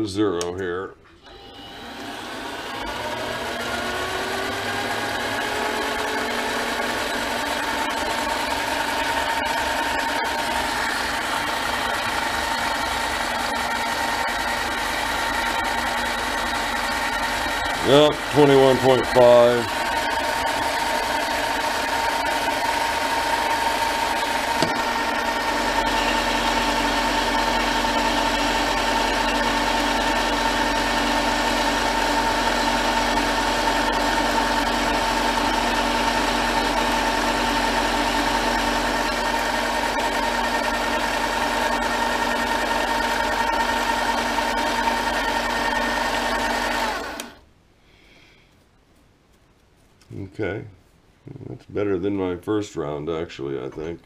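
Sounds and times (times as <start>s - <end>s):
metal lathe motor humming: 1.2s - 47.4s.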